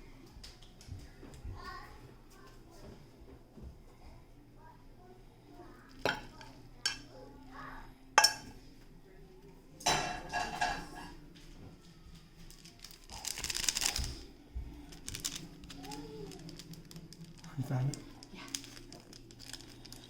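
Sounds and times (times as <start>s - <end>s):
dishes and utensils clinking: 5.9s - 7.1s, 8.2s - 8.6s, 9.8s - 11.2s
kitchenware scraping and rattling: 6.0s - 7.1s, 8.2s - 8.6s, 9.8s - 11.2s.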